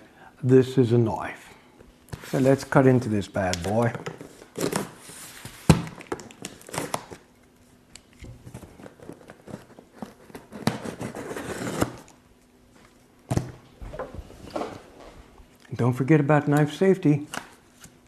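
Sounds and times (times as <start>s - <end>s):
wrapping crinkling and tearing: 3.5s - 12.2s
knife cutting into package: 9.4s - 12.1s.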